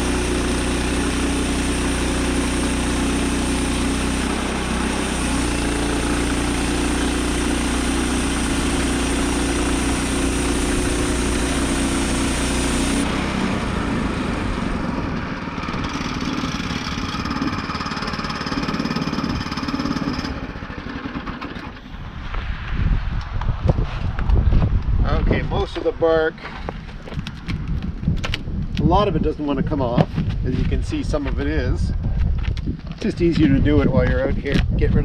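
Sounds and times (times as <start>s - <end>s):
sawmill gas engine running: 0.0s - 22.2s.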